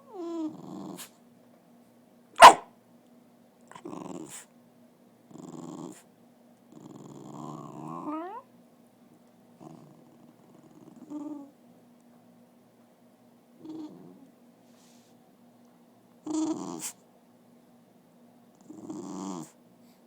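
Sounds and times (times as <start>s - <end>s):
dog grumbling and groaning: 0.0s - 1.1s, 3.7s - 4.4s, 5.3s - 6.0s, 6.7s - 8.5s, 9.6s - 11.5s, 13.6s - 14.3s, 16.2s - 17.0s, 18.6s - 19.6s.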